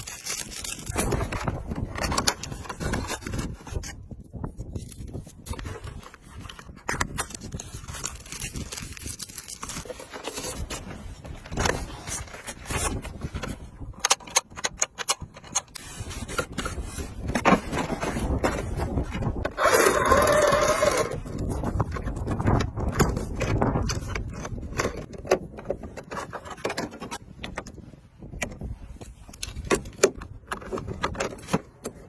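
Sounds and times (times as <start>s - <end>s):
toy car scraping over ground: 15.5s - 25.0s.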